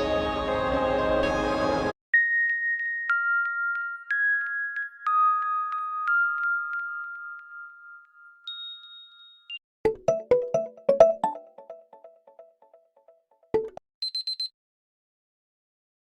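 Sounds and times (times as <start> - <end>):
bell-like alarm chimes: 2.2 - 11.8.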